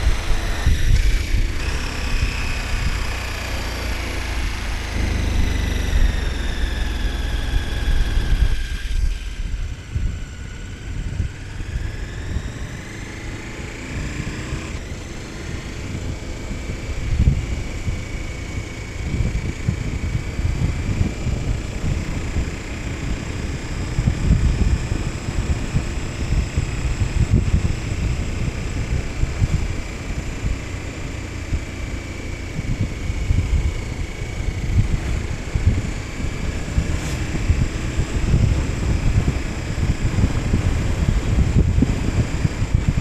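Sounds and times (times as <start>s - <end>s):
motorcycle engine revving: 0.0s - 43.0s
wind on microphone: 15.8s - 43.0s.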